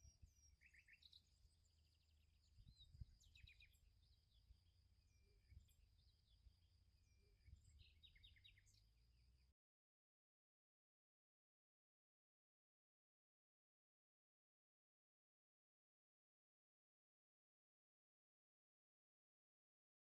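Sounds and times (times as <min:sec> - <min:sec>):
birds chirping and trilling: 0:00.0 - 0:09.3.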